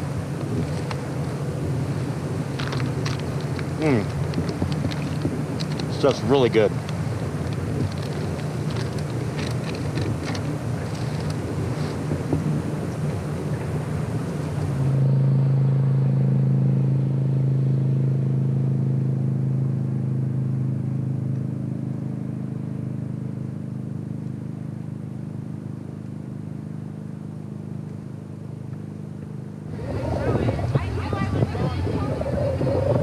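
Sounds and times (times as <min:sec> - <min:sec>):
wind and water rushing: 0:00.0 - 0:15.6, 0:29.7 - 0:33.0
powerboat engine droning: 0:00.0 - 0:33.0.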